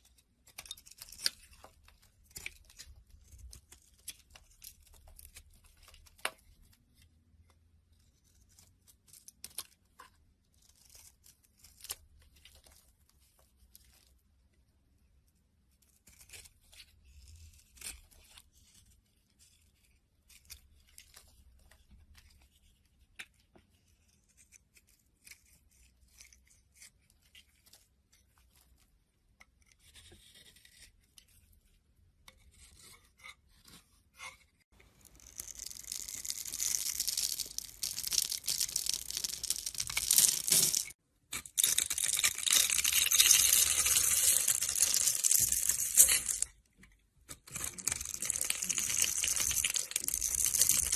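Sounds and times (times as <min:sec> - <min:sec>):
blade scraping soap: 0:08.1 - 0:12.9, 0:29.4 - 0:46.6.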